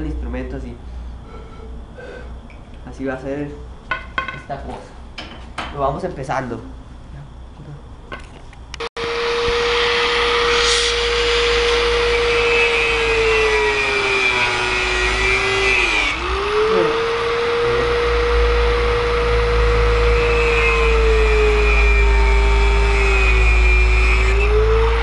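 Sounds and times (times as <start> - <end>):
power tool cutting bamboo: 9.0 - 25.0.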